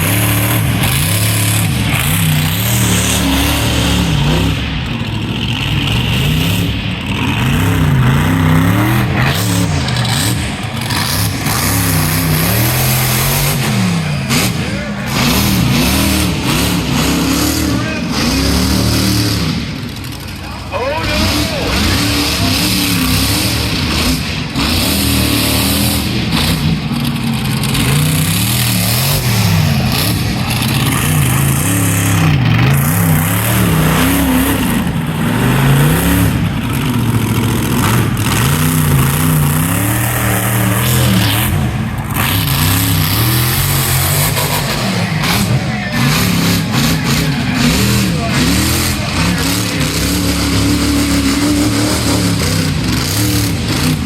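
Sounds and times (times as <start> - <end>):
truck engine revving hard: 0.0 - 54.0.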